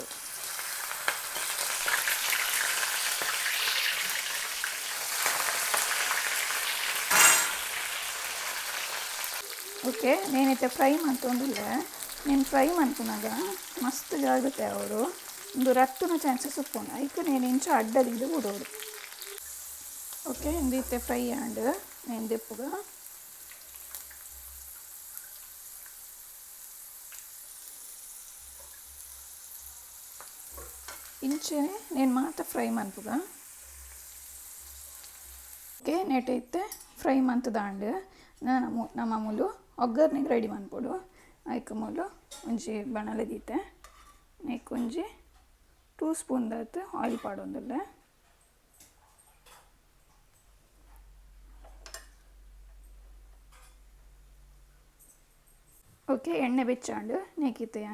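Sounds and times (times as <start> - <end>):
corn deep-frying in oil: 0.0 - 36.0.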